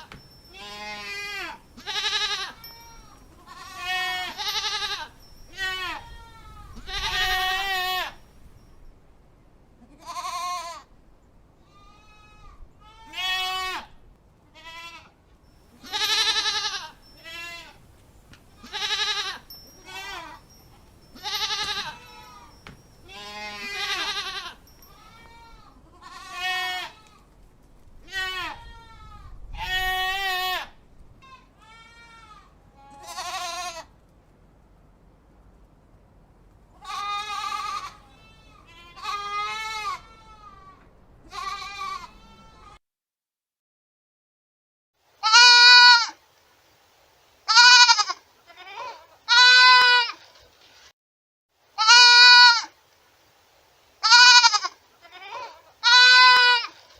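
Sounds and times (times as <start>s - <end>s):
goats bleating: 0.1s - 8.2s, 9.8s - 10.8s, 11.7s - 13.9s, 15.8s - 17.8s, 18.6s - 20.5s, 21.2s - 27.2s, 28.1s - 30.7s, 31.4s - 33.9s, 36.8s - 42.8s, 45.2s - 46.2s, 47.5s - 50.2s, 51.8s - 52.7s, 54.0s - 56.9s.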